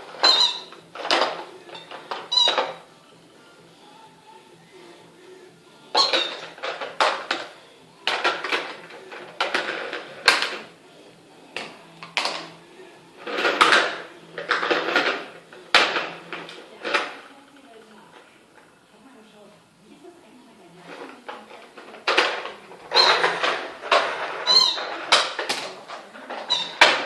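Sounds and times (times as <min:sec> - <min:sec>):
rubber squeaky toy squeaking: 0:00.1 - 0:00.9, 0:01.8 - 0:02.8, 0:05.9 - 0:06.6, 0:22.9 - 0:23.4, 0:24.4 - 0:25.0, 0:26.4 - 0:27.0.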